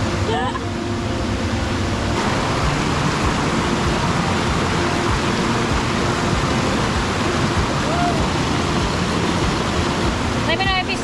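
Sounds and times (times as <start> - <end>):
creek water rushing: 0.0 - 11.0.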